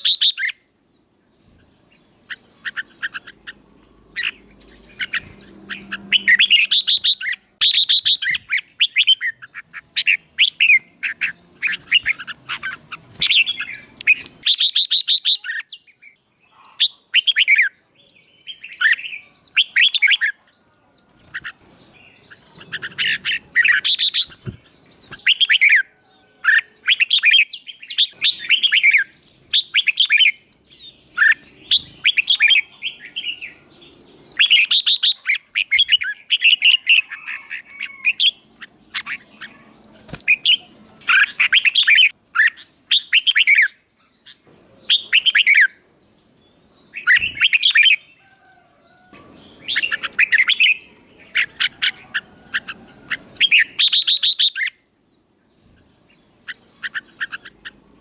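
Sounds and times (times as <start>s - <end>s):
songbird chirping and warbling: 0.0s - 58.0s.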